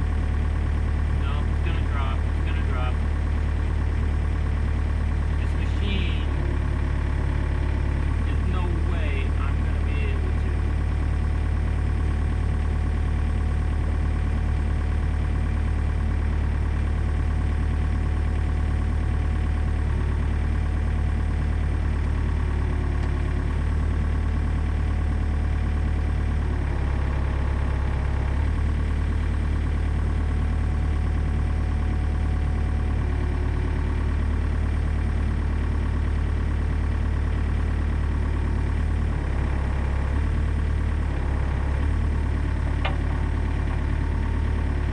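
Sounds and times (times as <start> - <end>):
mini excavator diesel engine: 0.0 - 44.9.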